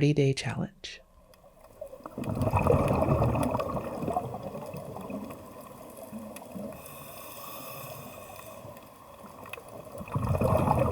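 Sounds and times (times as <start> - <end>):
underwater water noise: 1.0 - 10.9
sharp underwater clicks: 1.3 - 7.0.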